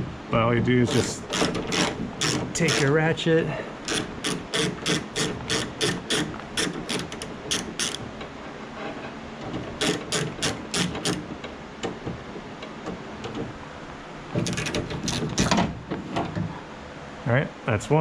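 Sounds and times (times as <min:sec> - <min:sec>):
hand ratchet clicking: 0:00.9 - 0:03.0, 0:03.8 - 0:08.0, 0:09.7 - 0:11.3, 0:14.4 - 0:15.6.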